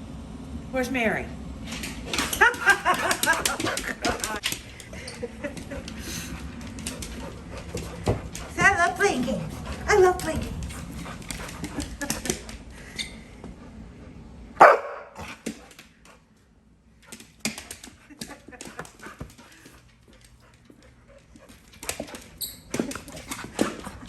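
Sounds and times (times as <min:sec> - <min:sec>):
dog barking: 0:14.6 - 0:15.4.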